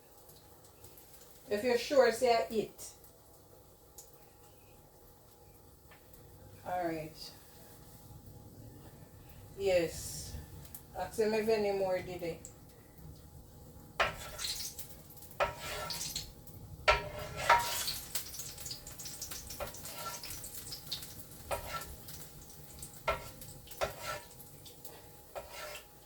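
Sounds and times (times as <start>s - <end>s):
dishes and utensils clinking: 16.9s - 18.2s.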